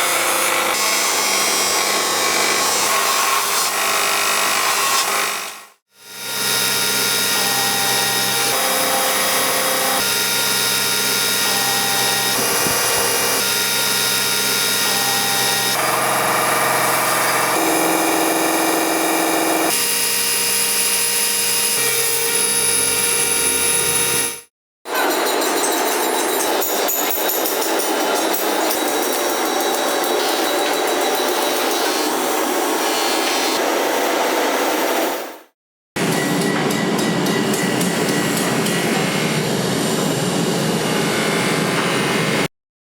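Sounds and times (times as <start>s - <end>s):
power tool grinding steel: 6.1s - 19.8s.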